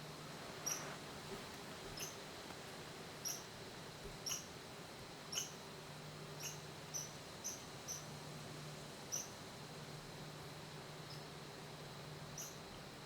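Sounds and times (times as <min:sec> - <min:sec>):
low steady hum: 0:00.0 - 0:13.0
small animal chirping: 0:00.6 - 0:00.8, 0:02.0 - 0:02.2, 0:03.2 - 0:03.4, 0:04.2 - 0:04.5, 0:05.3 - 0:05.6, 0:06.4 - 0:08.0, 0:12.4 - 0:12.6.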